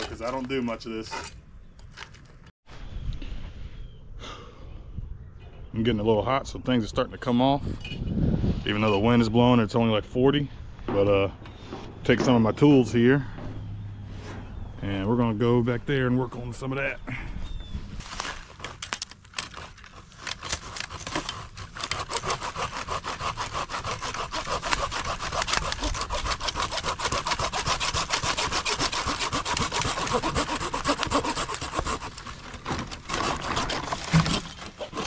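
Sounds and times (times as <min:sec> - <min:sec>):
pull saw cutting wood: 0:18.2 - 0:35.0.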